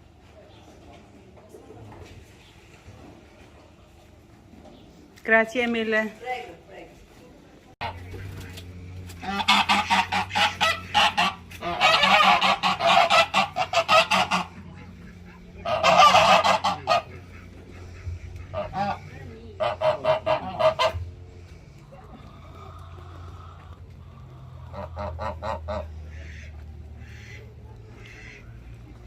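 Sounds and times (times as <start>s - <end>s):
steady low hum: 7.2s - 29.0s
geese honking: 7.8s - 29.0s.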